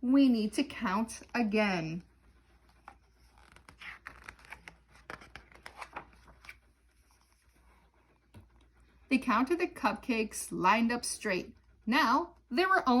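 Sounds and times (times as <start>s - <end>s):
book pages rustling and turning: 2.4s - 8.9s.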